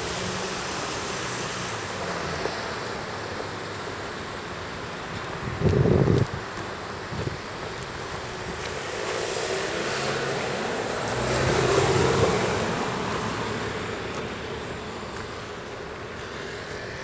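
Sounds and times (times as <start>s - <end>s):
vehicle passing by: 8.6s - 17.0s.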